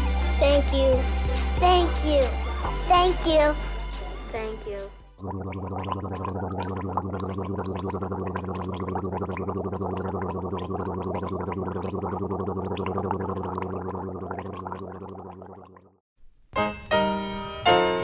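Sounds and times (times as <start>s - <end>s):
rapid bubbling crackle: 5.2s - 16.0s.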